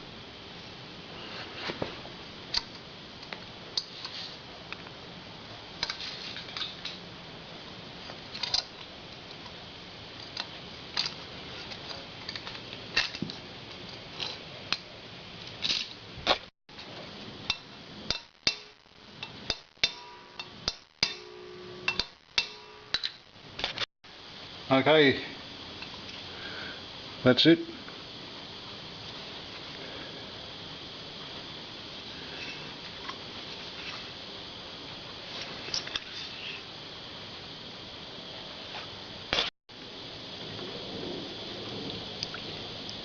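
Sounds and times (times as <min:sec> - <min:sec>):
short ringing tone: 0:19.8 - 0:23.0.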